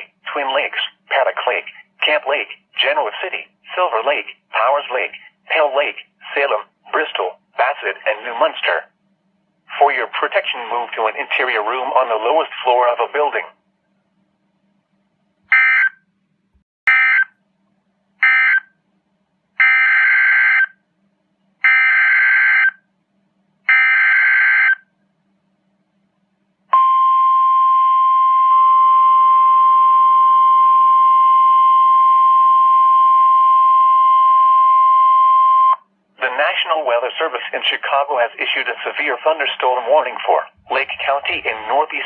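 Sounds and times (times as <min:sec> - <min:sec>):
steady weather alert tone: 0:00.0 - 0:08.8, 0:28.4 - 0:42.0.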